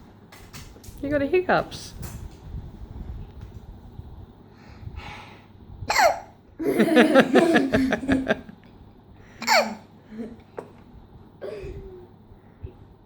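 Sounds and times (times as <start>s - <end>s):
child hiccuping: 5.9s - 6.3s, 9.4s - 9.8s
pulsing laughter: 6.6s - 8.5s.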